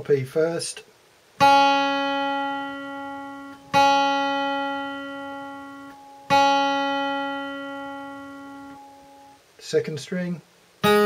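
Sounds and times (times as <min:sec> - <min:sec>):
guitar string plucked ringing: 0:01.4 - 0:09.4.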